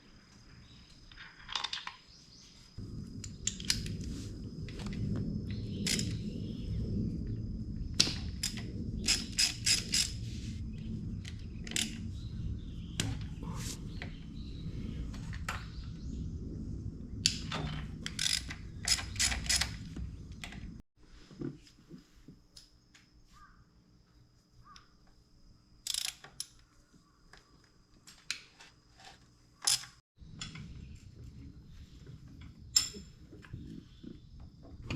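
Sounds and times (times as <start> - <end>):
faint hum: 2.8 - 18.8
low rumble: 2.8 - 20.8, 30.2 - 34.9.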